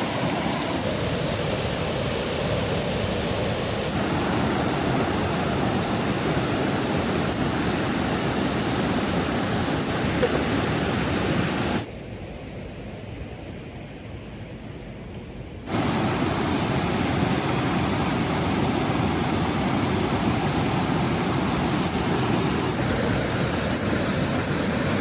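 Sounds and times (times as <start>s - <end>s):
river water rushing: 0.0s - 11.9s, 15.7s - 25.0s
falling rain: 15.7s - 25.0s.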